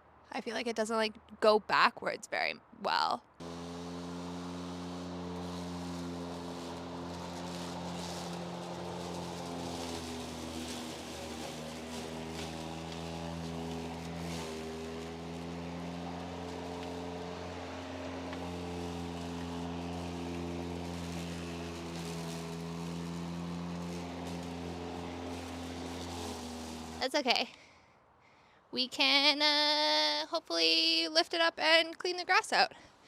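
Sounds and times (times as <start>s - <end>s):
electric lawn mower humming: 3.4s - 27.1s.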